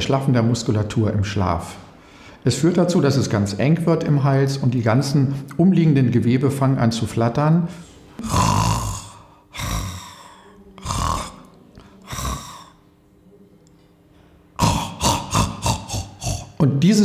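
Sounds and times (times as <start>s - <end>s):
person snoring: 8.2s - 12.8s, 14.6s - 16.6s
choking gasps and snorts: 14.6s - 16.6s.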